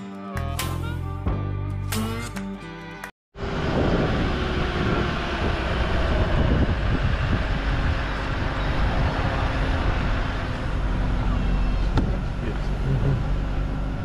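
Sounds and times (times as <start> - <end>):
vehicle engine and road noise: 3.4 - 14.0.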